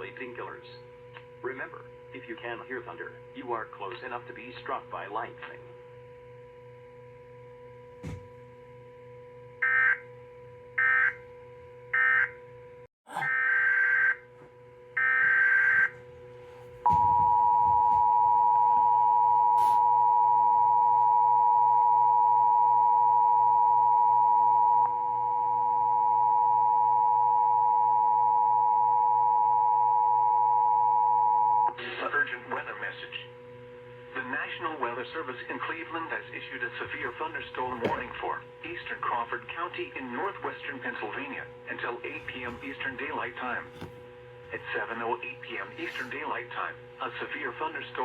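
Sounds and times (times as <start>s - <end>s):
two-tone attention signal: 16.9s - 31.7s.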